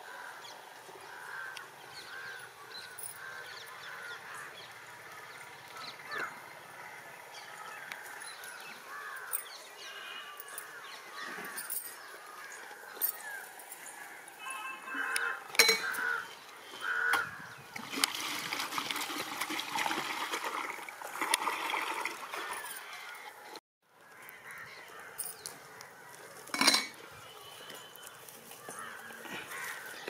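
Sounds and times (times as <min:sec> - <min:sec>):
birds honking: 0:08.8 - 0:17.6.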